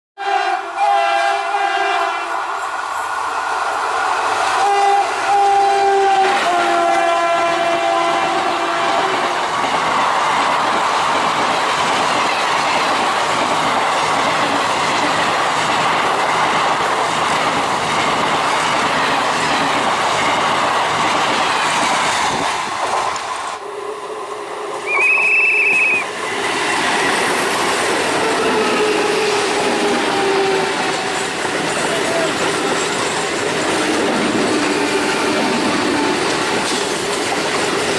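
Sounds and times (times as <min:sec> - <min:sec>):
train horn blasts: 0:00.2 - 0:02.5, 0:04.6 - 0:09.3, 0:28.2 - 0:30.8
train wheels rumbling and clattering: 0:02.4 - 0:23.6, 0:25.6 - 0:37.9.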